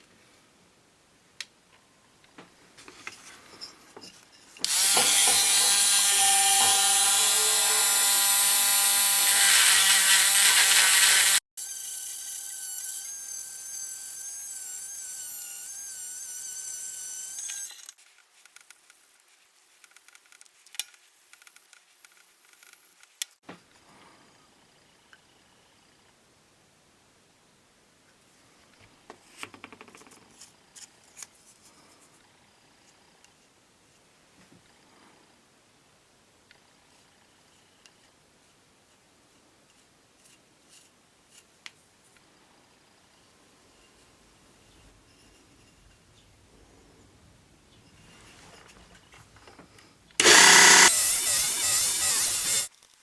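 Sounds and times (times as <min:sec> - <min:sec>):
electric power tool whining: 0:04.7 - 0:13.2, 0:50.2 - 0:52.7.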